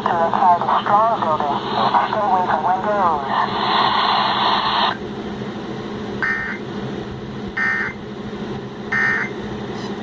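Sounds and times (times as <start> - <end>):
radio hiss: 0.0 - 5.0.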